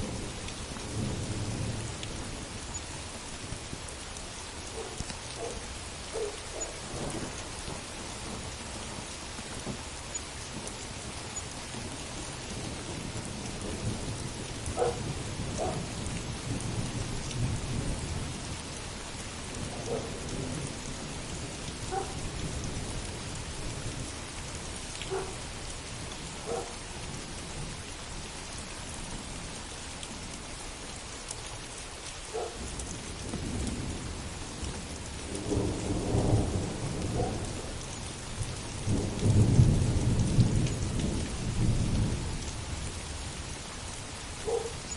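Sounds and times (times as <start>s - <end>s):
heavy rain falling: 0.0s - 44.9s
dog barking: 4.7s - 6.8s, 14.8s - 15.0s, 15.6s - 15.9s, 19.8s - 20.1s, 21.9s - 22.2s, 25.1s - 25.4s, 26.4s - 26.8s, 32.3s - 32.6s, 37.2s - 37.4s, 44.4s - 44.8s
rolling thunder: 6.8s - 9.8s, 10.6s - 18.7s, 19.5s - 25.4s, 33.2s - 43.2s.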